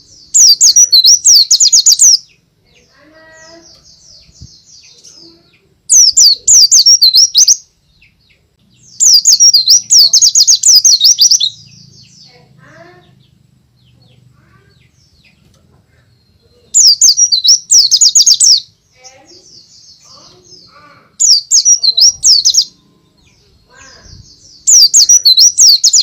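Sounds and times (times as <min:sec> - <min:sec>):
bird singing rapid high notes: 0:00.0 - 0:02.3, 0:05.9 - 0:07.6, 0:08.8 - 0:12.3, 0:16.8 - 0:18.7, 0:21.2 - 0:26.0.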